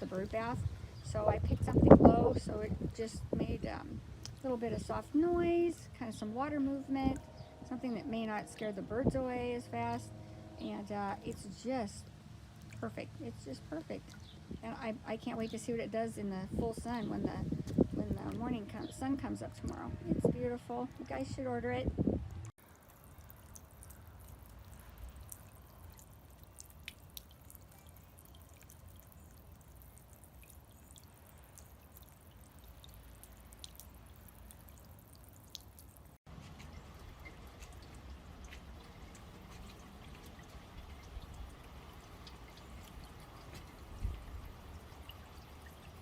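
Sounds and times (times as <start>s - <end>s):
fountain water trickling and splashing: 0.0s - 46.0s.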